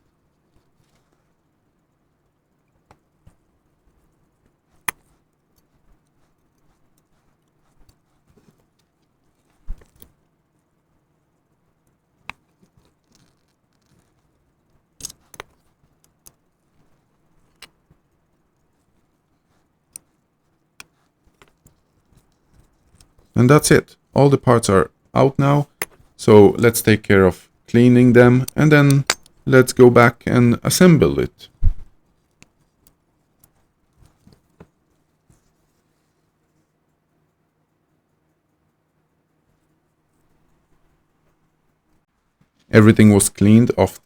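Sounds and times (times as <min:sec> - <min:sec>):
small metal tools clicking: 0:28.4 - 0:29.4.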